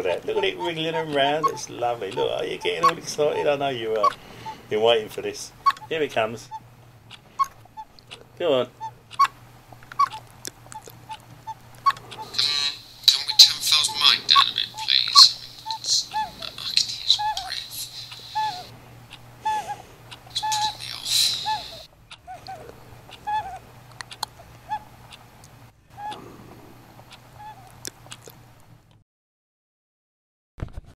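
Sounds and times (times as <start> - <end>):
bird chirping: 0.0 - 4.7, 10.0 - 18.7, 19.4 - 23.6
rustling hiss: 12.0 - 18.7, 19.4 - 21.9.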